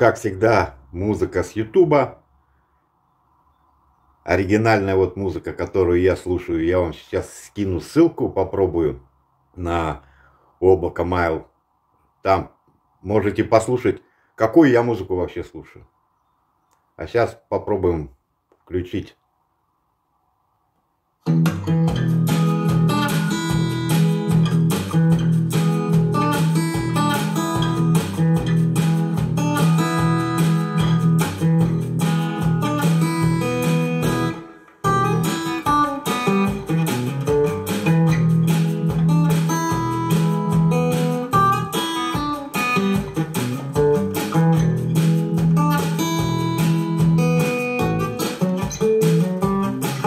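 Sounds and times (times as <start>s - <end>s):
guitar solo music through speakers: 21.2s - 50.0s
steady bass line: 21.4s - 50.0s.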